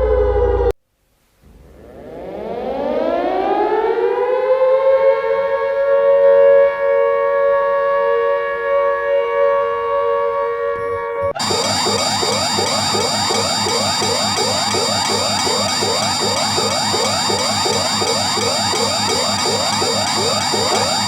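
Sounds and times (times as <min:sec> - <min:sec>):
warning siren winding up: 0:10.8 - 0:21.0.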